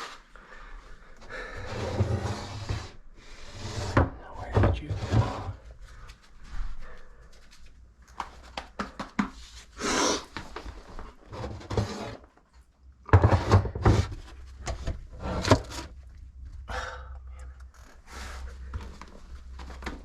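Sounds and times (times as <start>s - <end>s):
objects clattering and knocking: 10.5s - 16.0s.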